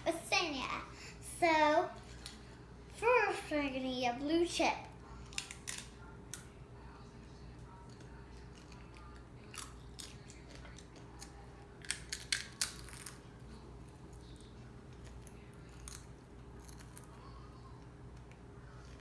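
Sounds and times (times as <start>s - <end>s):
chip crunching: 5.1s - 6.5s, 7.9s - 17.4s.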